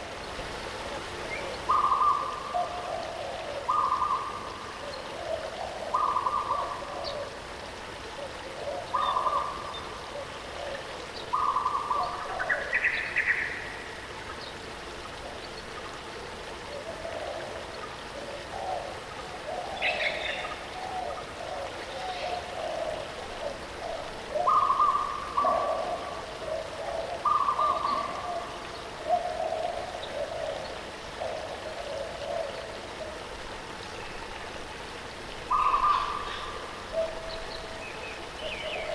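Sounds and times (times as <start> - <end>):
birds warbling: 35.5 - 38.9.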